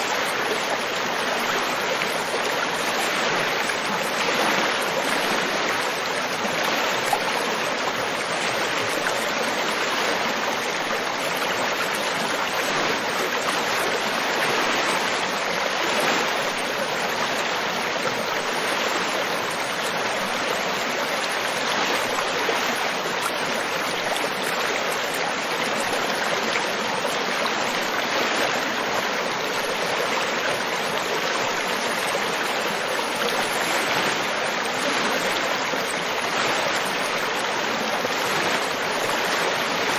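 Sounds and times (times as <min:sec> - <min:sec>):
water rushing over rocks: 0:00.0 - 0:39.9.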